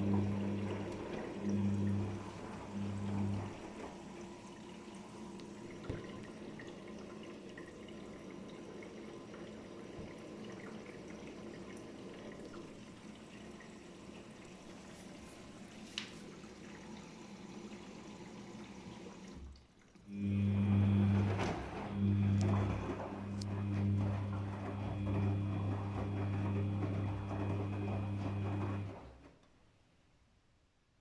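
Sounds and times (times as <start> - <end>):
water running into washing machine: 0.0 - 29.4
loud low hum: 20.2 - 28.4.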